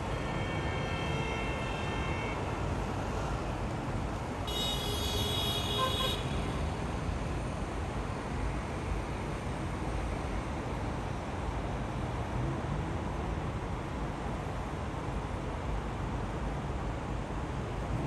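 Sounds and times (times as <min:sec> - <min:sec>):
road traffic noise: 0:00.0 - 0:18.0
car horn: 0:04.5 - 0:06.4.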